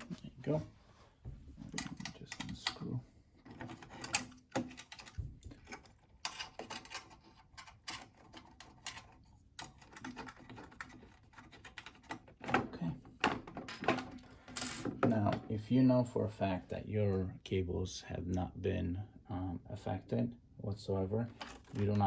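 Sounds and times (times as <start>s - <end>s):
metal and plastic parts knocking: 1.6s - 15.5s.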